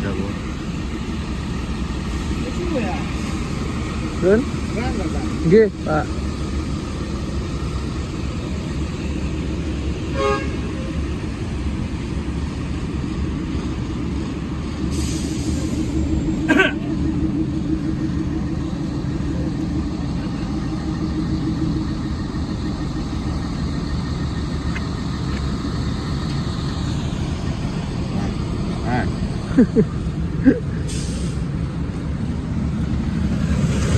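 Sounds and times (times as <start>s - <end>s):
bus diesel engine running: 0.0s - 33.9s
bus horn toots: 10.0s - 11.2s
air hiss: 14.9s - 16.0s, 30.8s - 31.5s.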